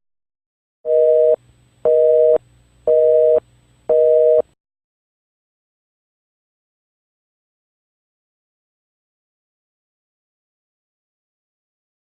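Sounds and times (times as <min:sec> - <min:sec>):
telephone busy signal beeps: 0:00.9 - 0:04.4.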